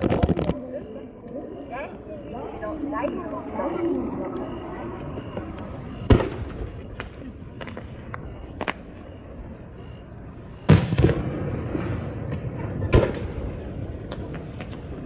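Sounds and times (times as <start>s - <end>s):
firework shells booming: 0.0s - 1.0s, 2.2s - 15.0s
faint firework pops: 5.6s - 8.9s, 10.7s - 15.0s.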